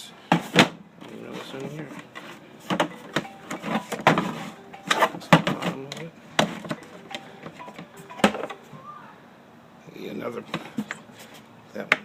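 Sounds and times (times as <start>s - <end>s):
tools and metal parts clattering: 1.0s - 8.6s, 10.5s - 11.1s.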